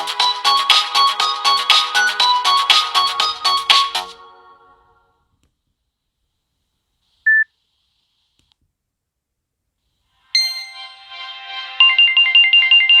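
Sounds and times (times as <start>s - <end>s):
short high beep: 7.3s - 7.5s
electronic ringtone melody: 10.4s - 13.0s.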